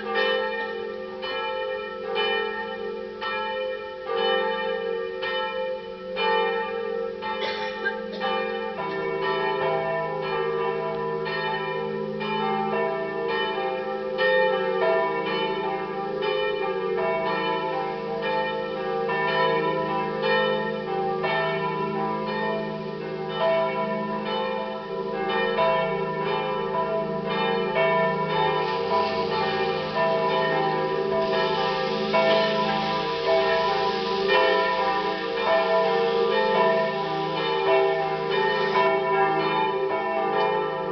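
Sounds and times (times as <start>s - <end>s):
church bells ringing: 0.0s - 40.9s
deeper bell ringing: 17.6s - 40.9s.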